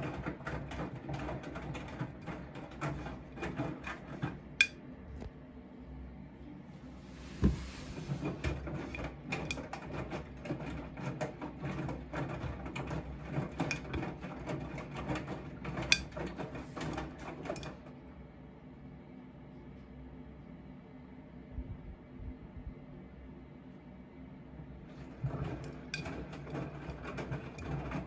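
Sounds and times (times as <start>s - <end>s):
washing machine drum turning: 0.0s - 4.8s, 7.2s - 17.9s, 24.9s - 28.0s.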